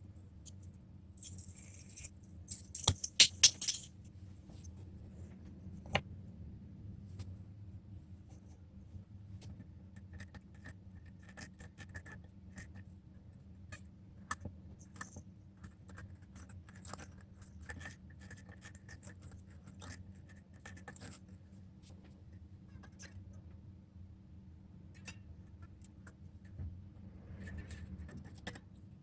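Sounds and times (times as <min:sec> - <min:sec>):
low steady hum: 0:00.0 - 0:29.0
hand tools scraping and clicking: 0:01.2 - 0:03.9.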